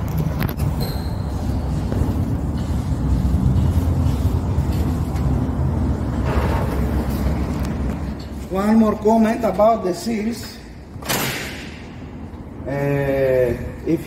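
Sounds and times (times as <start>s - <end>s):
low mechanical rumble: 0.0s - 9.4s.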